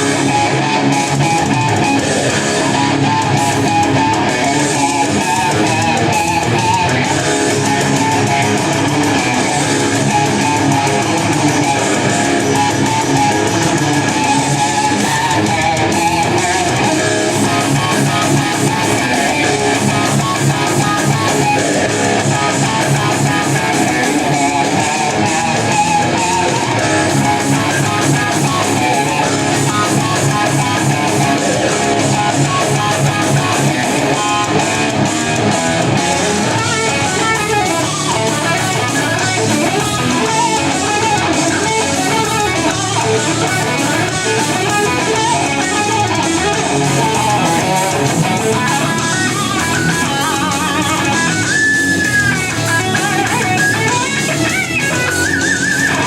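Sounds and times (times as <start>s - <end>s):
electric guitar playing: 0.0s - 56.0s.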